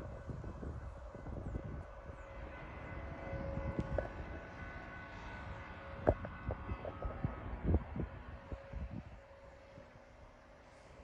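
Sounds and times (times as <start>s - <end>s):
freight train rolling past: 0.0s - 11.0s.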